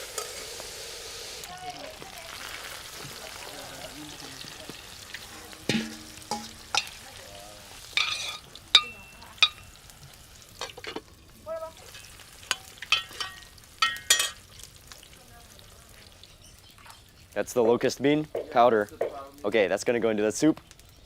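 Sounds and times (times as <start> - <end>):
utensil clanking in metal pot: 5.5 - 7.0, 7.9 - 9.7, 11.9 - 14.4.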